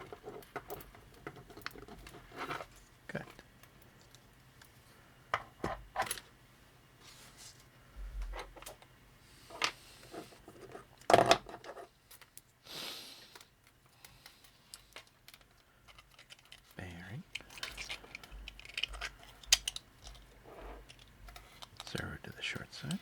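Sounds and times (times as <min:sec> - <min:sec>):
rustling scrape: 0:07.0 - 0:07.7, 0:20.4 - 0:21.7
plastic parts clicking and knocking: 0:13.4 - 0:23.0.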